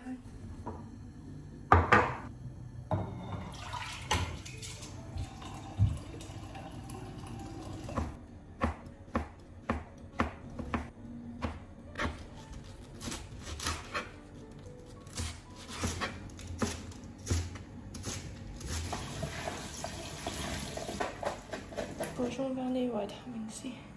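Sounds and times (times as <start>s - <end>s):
water pouring into a pot: 3.4s - 8.0s, 18.9s - 21.1s.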